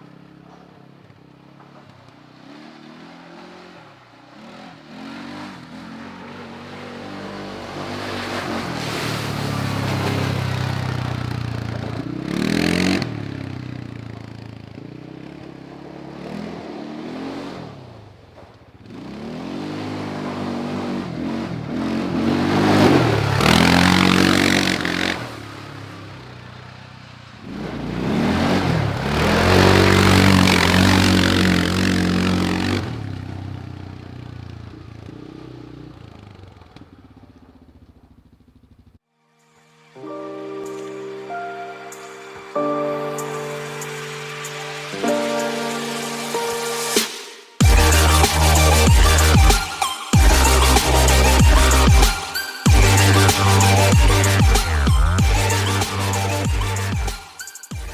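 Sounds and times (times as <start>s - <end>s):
quad bike engine accelerating: 0.0s - 39.0s, 47.6s - 57.9s.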